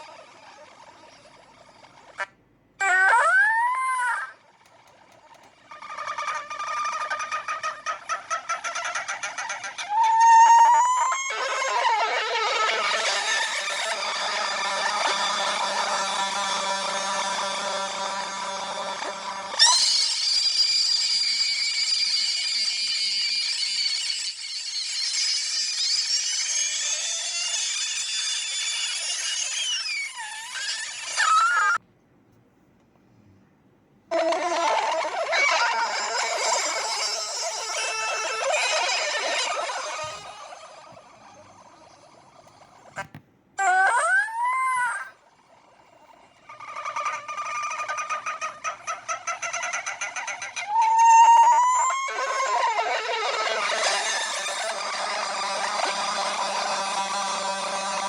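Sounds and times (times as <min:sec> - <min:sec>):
cartoon fowl clucking and squawking: 0:02.1 - 0:04.4, 0:05.8 - 0:20.3, 0:34.1 - 0:40.9, 0:43.6 - 0:45.1, 0:46.5 - 0:58.0
sped-up cartoon soundtrack: 0:13.0 - 0:21.0.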